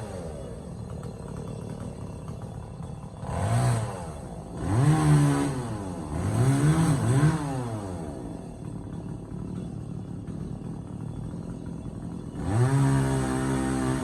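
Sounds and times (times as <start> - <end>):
chainsaw engine revving: 0.0 - 14.0
chainsaw idling: 0.0 - 14.0.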